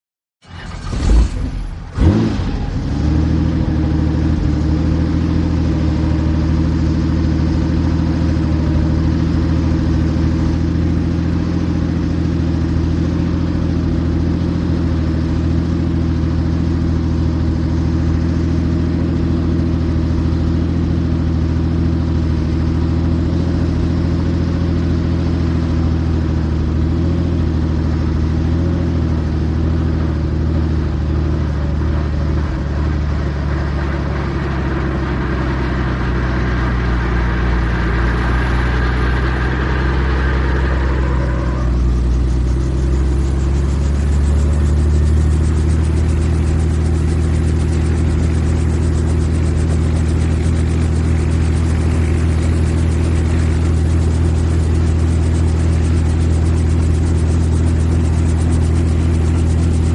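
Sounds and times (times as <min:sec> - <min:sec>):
helicopter engine and rotors droning: 0:02.6 - 0:59.9.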